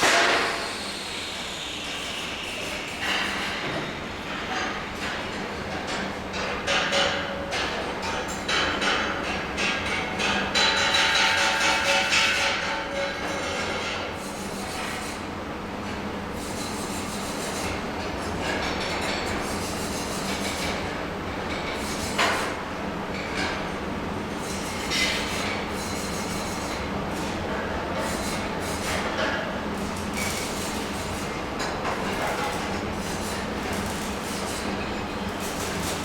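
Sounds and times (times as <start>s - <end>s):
welding rumble and hiss: 0.0s - 4.3s, 24.4s - 36.0s.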